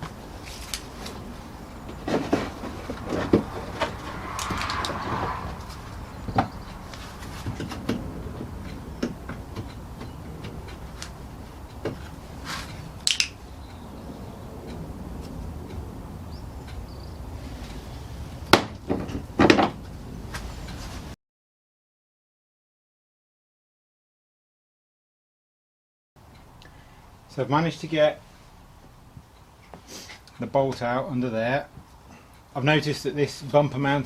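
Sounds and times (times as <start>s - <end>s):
hand tool clicks and knocks: 7.4s - 13.4s.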